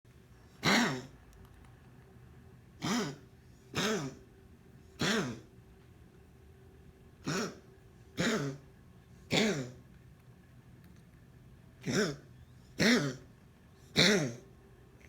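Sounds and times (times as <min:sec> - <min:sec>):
cat coughing: 0:00.6 - 0:01.2, 0:02.8 - 0:04.2, 0:05.0 - 0:05.5, 0:07.2 - 0:08.7, 0:09.3 - 0:09.8, 0:11.8 - 0:13.3, 0:13.9 - 0:14.4.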